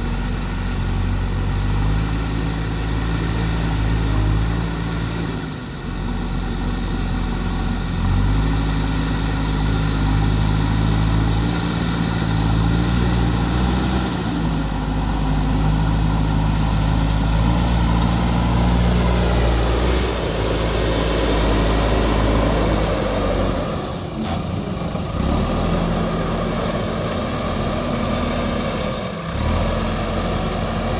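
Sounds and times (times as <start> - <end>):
diesel engine revving: 0.0 - 30.9.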